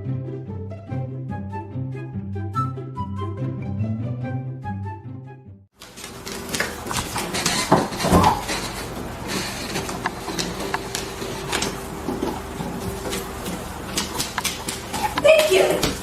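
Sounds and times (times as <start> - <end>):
background music: 0.0 - 5.7.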